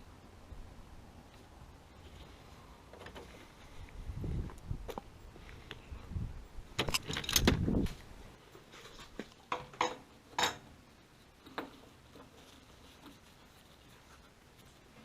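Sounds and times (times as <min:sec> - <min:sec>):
metal clinking and knocking: 0:09.5 - 0:10.7.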